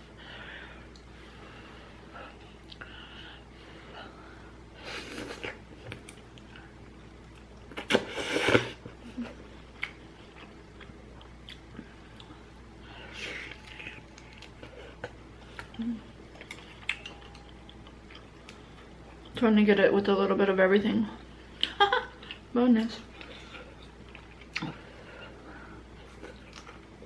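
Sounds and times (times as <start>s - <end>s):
chewing and mouth noises: 9.7s - 12.5s, 13.1s - 19.4s, 23.1s - 25.0s.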